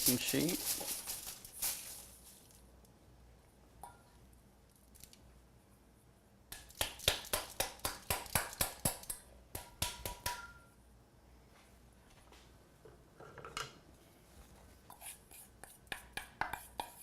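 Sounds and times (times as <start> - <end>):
dry food rattling onto baking sheet: 0.0 - 2.2.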